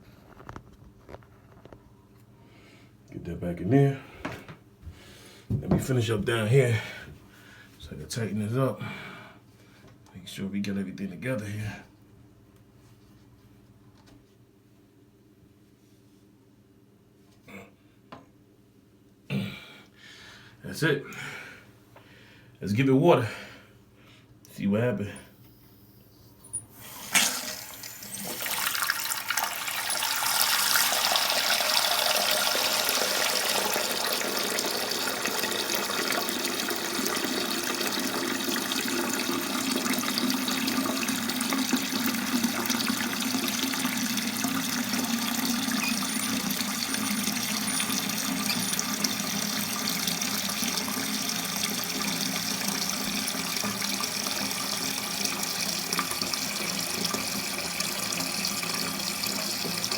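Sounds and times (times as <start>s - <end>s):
water rushing into toilet tank: 26.7s - 59.9s.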